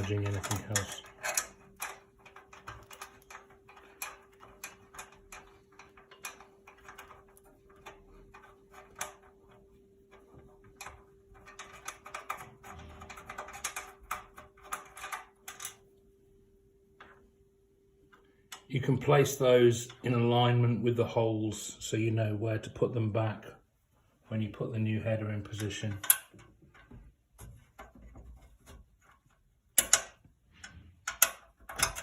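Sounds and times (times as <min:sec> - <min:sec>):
faint steady hum: 0:00.0 - 0:32.0.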